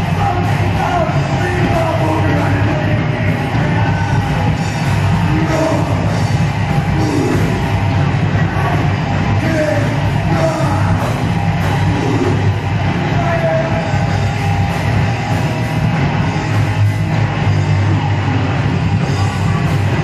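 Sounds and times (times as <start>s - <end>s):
heavy metal band playing: 0.0s - 20.0s
person yelling vocals: 8.5s - 11.1s.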